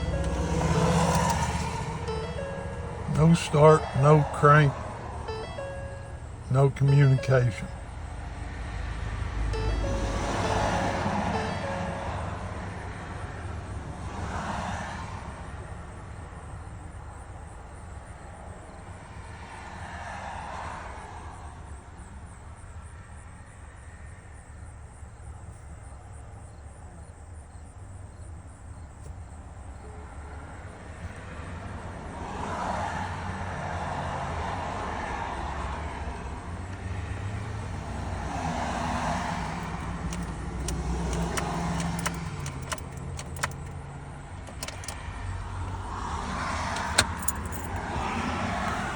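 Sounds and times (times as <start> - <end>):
road vehicles passing: 0.0 - 18.5, 31.2 - 48.9
sharp clicks: 39.5 - 43.8, 44.5 - 45.0.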